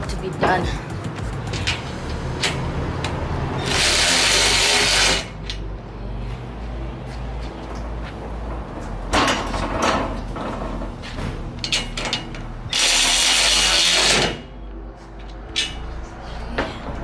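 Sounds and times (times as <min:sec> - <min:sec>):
steady low hum: 0:00.0 - 0:17.0
power drill driving bolts: 0:03.6 - 0:05.3, 0:11.7 - 0:14.4.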